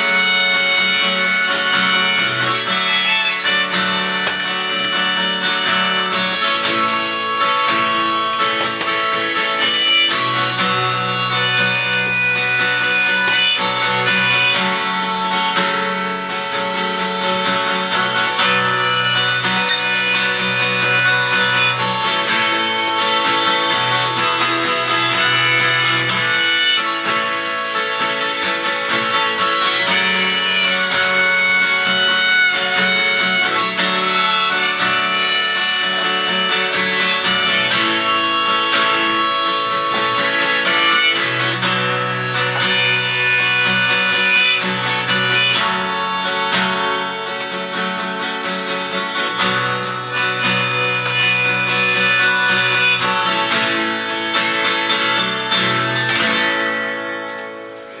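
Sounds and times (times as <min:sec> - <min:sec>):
acoustic guitar accompaniment: 0:00.0 - 0:58.0
harmonica melody: 0:00.0 - 0:58.0.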